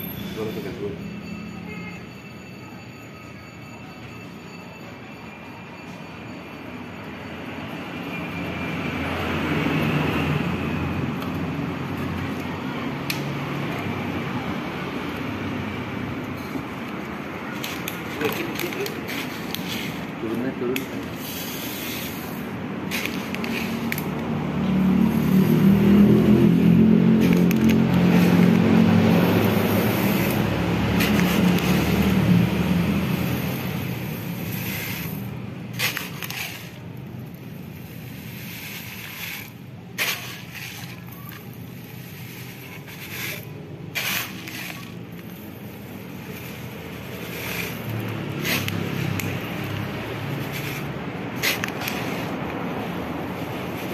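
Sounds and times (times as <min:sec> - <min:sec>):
scraping and crunching: 0:16.2 - 0:53.9.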